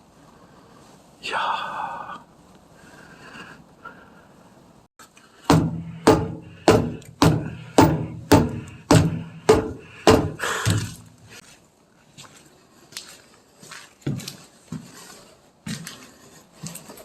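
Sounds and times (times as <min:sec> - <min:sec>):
heavy thuds with low ringing: 0:05.5 - 0:11.2.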